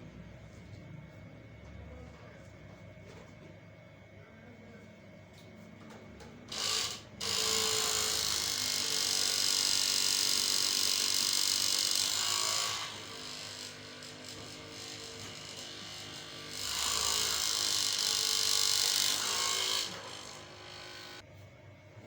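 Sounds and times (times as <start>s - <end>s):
small electric motor buzzing: 6.5s - 21.2s.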